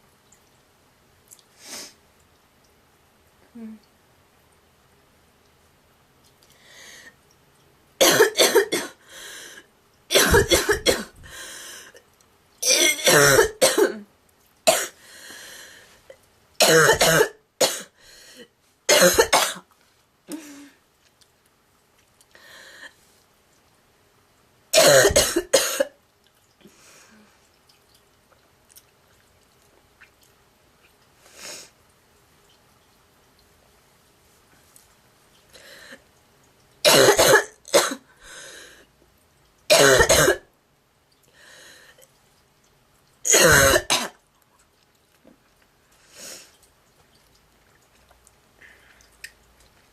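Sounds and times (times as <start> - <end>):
girl's honking cough: 10.2 - 11.1.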